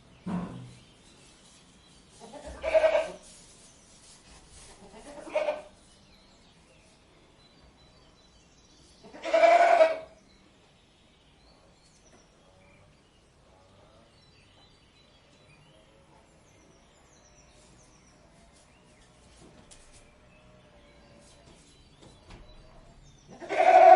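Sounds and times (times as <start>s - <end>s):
goat bleating: 2.2s - 3.2s, 4.8s - 5.7s, 9.0s - 10.1s, 23.3s - 23.9s.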